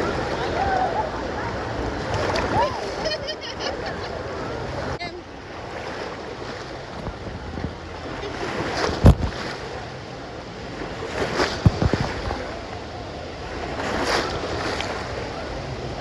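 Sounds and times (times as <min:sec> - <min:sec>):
water washing and splashing: 0:00.0 - 0:03.2, 0:05.6 - 0:10.0, 0:10.6 - 0:12.8, 0:13.5 - 0:15.4
sharp water splashes: 0:10.8 - 0:12.5.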